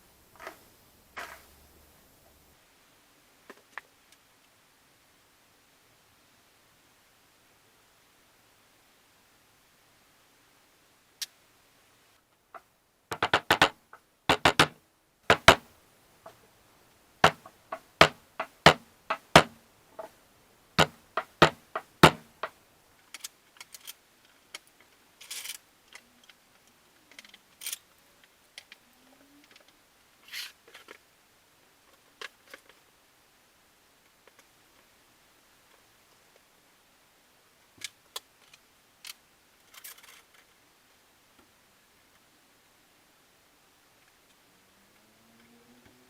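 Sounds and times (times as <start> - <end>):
sharp knocks and taps: 12.6 - 15.7, 17.2 - 20.1, 20.8 - 22.6.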